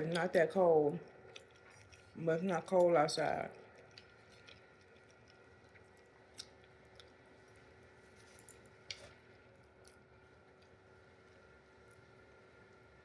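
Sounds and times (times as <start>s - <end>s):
faint mouth clicks from chewing: 3.7s - 7.2s.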